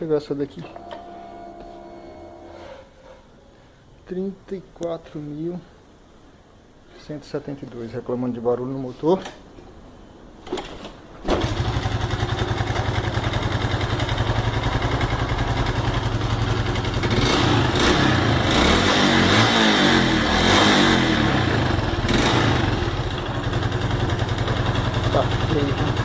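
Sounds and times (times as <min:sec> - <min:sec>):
motorcycle engine idling and revving: 0:11.3 - 0:26.0.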